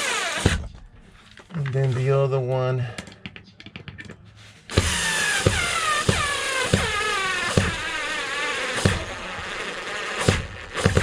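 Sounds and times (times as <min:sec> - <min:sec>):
power drill driving screw into wood: 0:00.0 - 0:00.7, 0:04.7 - 0:11.0.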